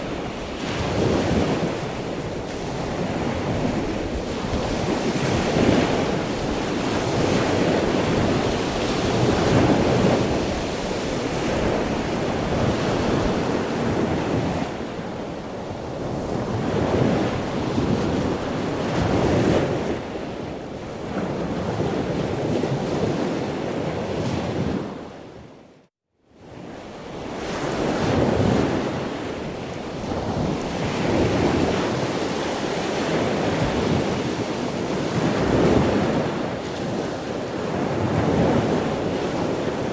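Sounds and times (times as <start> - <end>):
ocean waves breaking: 0.0 - 15.0.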